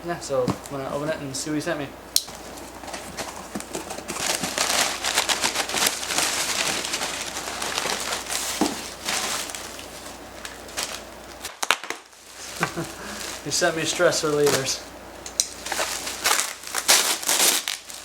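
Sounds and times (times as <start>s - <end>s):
packing material crinkling: 2.3s - 14.8s, 15.5s - 18.0s.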